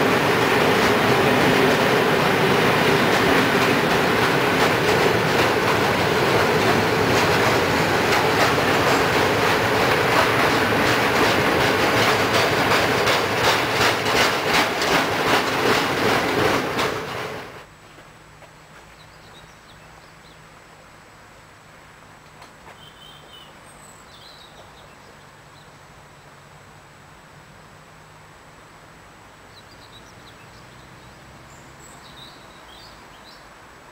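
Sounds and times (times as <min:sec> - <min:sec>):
train wheels clattering over rails: 0:00.0 - 0:17.7
faint bird chirps: 0:22.7 - 0:25.8.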